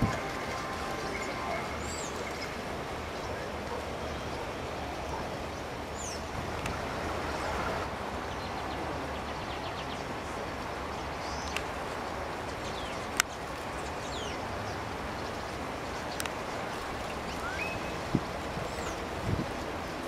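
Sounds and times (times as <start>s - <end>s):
high falling bird calls: 0.0s - 4.5s, 12.6s - 19.2s
steady background hiss: 0.0s - 20.0s.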